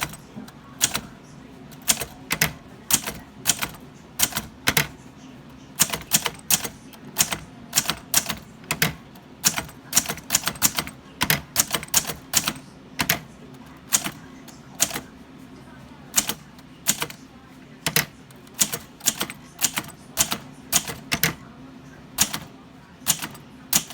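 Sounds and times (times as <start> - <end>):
typewriter typebar strikes: 5.8 - 13.2, 17.9 - 21.4, 22.2 - 22.5, 23.1 - 23.9.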